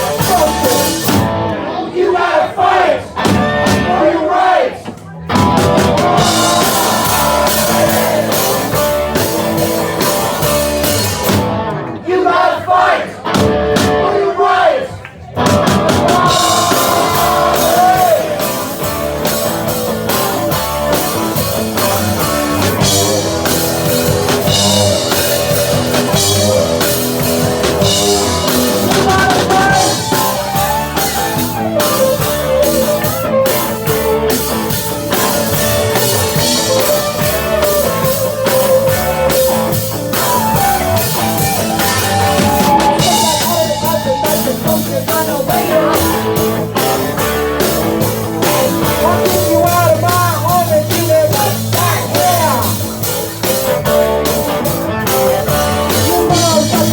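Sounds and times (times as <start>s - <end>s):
live rock band playing: 0.0s - 1.8s, 2.7s - 4.2s, 4.9s - 12.0s, 13.2s - 14.1s, 15.3s - 56.9s.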